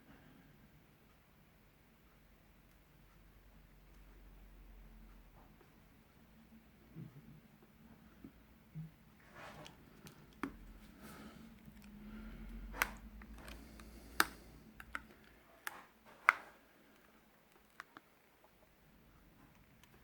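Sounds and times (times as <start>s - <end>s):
small sharp clicks and taps: 12.8s - 18.1s.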